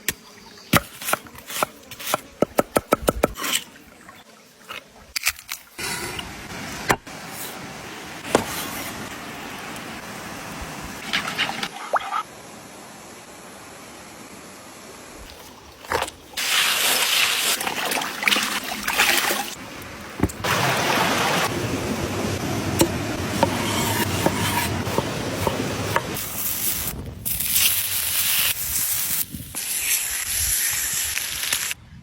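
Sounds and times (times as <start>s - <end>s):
fish sizzling in hot oil: 26.2s - 31.8s.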